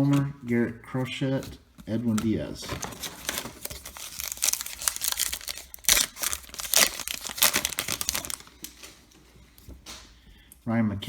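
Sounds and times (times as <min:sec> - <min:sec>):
card pack wrapper crinkling: 0:02.1 - 0:09.1.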